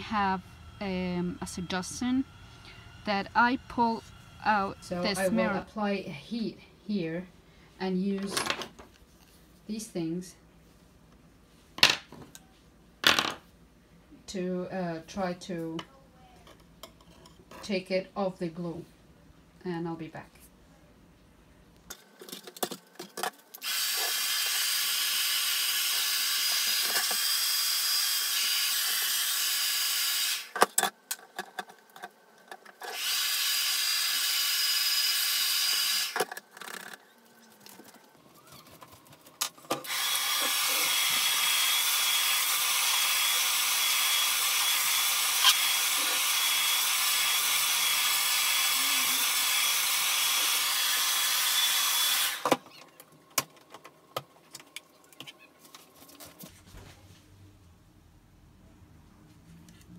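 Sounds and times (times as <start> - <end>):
hot-air blower hissing and whining: 0.0 - 5.6, 32.8 - 36.2, 39.7 - 52.6.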